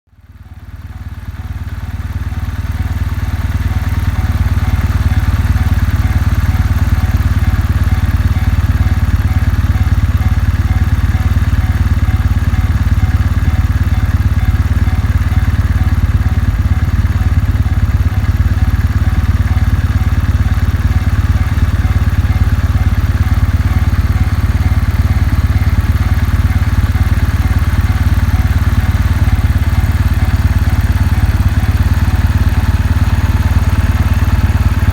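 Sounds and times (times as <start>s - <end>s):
motorcycle engine idling: 0.1s - 34.9s
railway crossing bell ringing: 3.6s - 34.9s.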